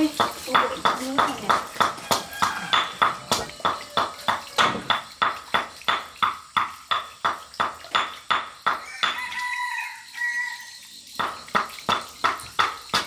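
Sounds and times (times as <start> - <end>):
rhythmic knocking: 0.0 - 9.2, 11.2 - 13.0
rooster crowing: 1.8 - 4.7, 8.8 - 10.9.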